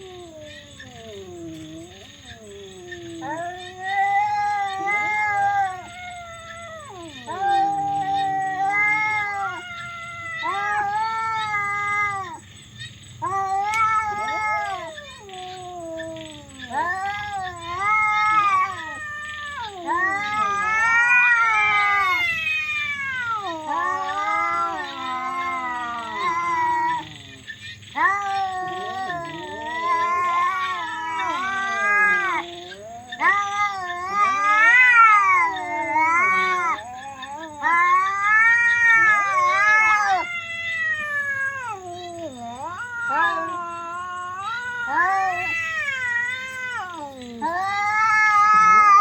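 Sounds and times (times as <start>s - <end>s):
cats yowling in a fight: 0.0s - 49.0s.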